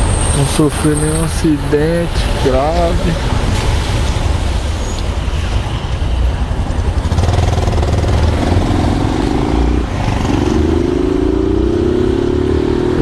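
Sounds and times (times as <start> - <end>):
motorcycle engine accelerating: 6.6 - 13.0.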